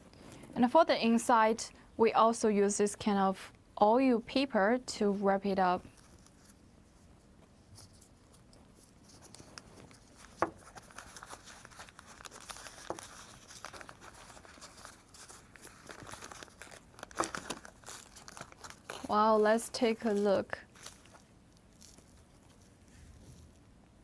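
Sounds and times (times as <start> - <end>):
paper crinkling and rustling: 5.8 - 23.6.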